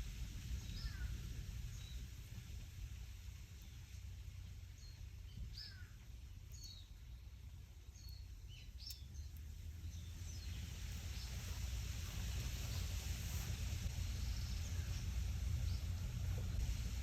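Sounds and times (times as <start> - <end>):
small birds chirping: 0.5 - 2.4, 3.5 - 16.6
leaves rustling: 9.9 - 17.0.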